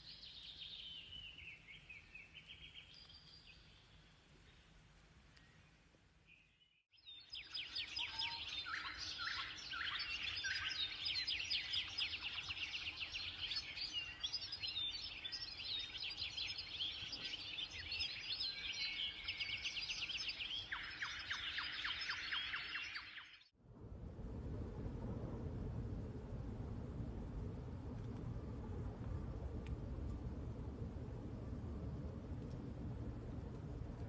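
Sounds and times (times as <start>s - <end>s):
songbirds singing: 0.0s - 23.5s.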